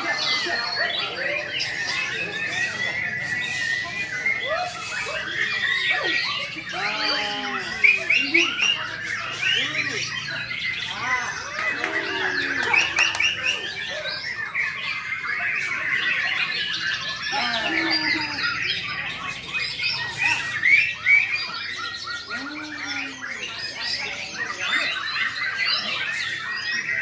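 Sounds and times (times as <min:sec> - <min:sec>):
caged birds singing: 0:00.0 - 0:27.0.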